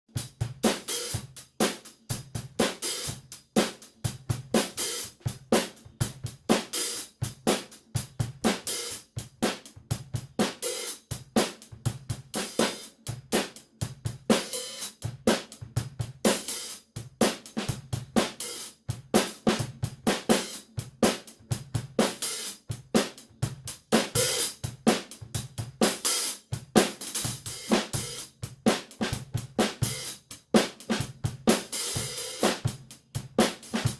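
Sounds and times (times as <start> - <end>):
snare drum backbeats: 25.8 - 33.9.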